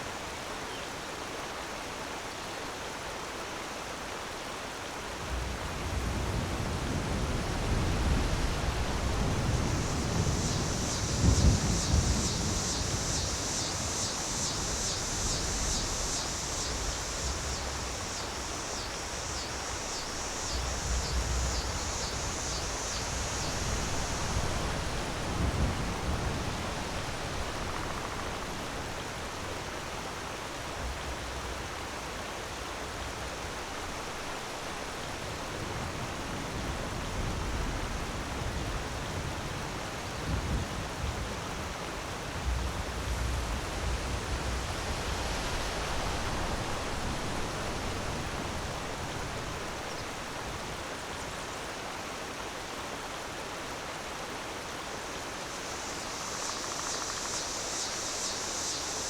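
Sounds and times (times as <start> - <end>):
fast-pulsing high hiss: 8.8 - 25.8, 55.0 - 59.0
waterfall rushing: 41.9 - 59.0.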